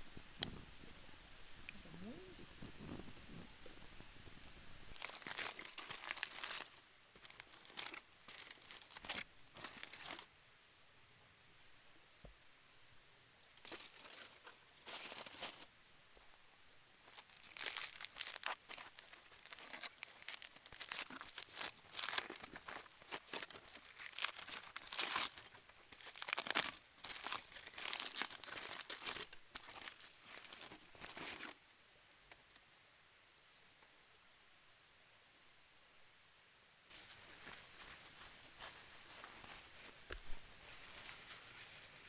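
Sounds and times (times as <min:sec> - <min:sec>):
crinkly wrapping crumpled and torn: 0:01.7 - 0:10.3, 0:13.4 - 0:16.4, 0:17.0 - 0:31.6, 0:36.9 - 0:42.0.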